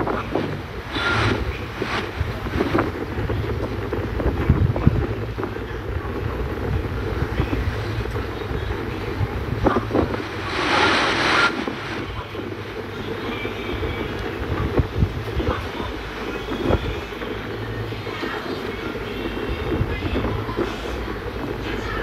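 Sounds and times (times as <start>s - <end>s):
steady low rumble: 0.0s - 22.0s
wind buffeting microphone: 0.0s - 22.0s
brief hiss: 10.0s - 12.2s.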